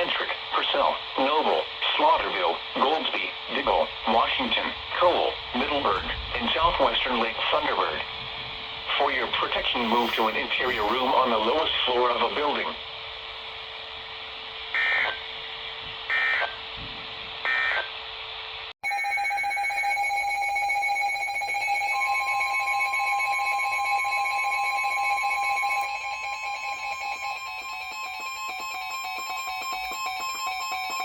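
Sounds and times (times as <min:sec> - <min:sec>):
harsh digital data bursts: 0:09.1 - 0:11.7, 0:18.8 - 0:31.0
steady electronic alert tone: 0:09.6 - 0:11.5, 0:18.8 - 0:31.0.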